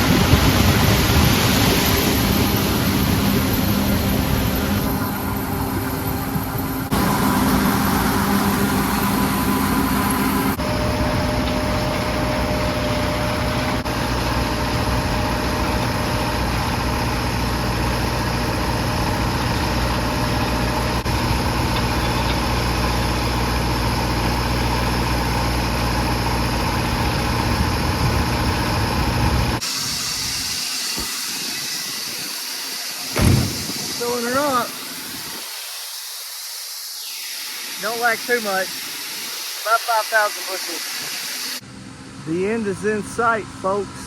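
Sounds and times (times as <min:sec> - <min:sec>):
machine engine running: 0:00.0 - 0:44.0
steady hiss: 0:29.6 - 0:41.6.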